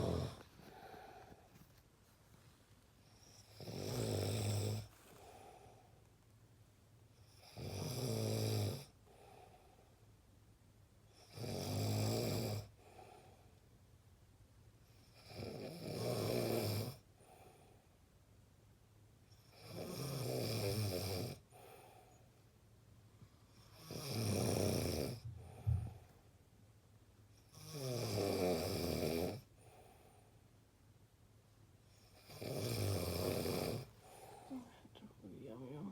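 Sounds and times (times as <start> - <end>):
person snoring: 0.0 - 1.3, 3.4 - 4.9, 23.6 - 25.7, 32.2 - 34.8
faint breath: 0.0 - 1.8, 4.9 - 6.1, 9.0 - 10.1, 12.8 - 13.6, 21.5 - 22.4, 25.2 - 26.3, 29.6 - 30.5, 33.9 - 35.0.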